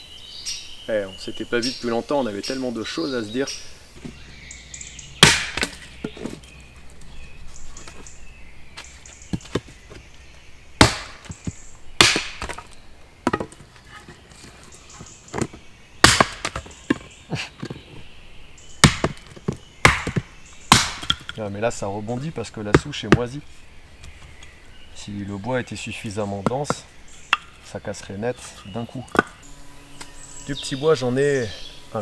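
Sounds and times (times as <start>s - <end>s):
axe chopping wood: 5.2s - 6.4s, 10.8s - 14.1s, 15.0s - 17.7s, 18.8s - 21.4s, 22.6s - 23.4s, 29.1s - 29.4s.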